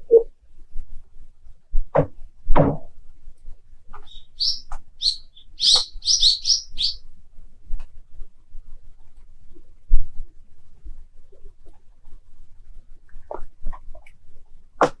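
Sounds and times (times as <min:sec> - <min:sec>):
ice short high chirps: 0:04.0 - 0:07.0.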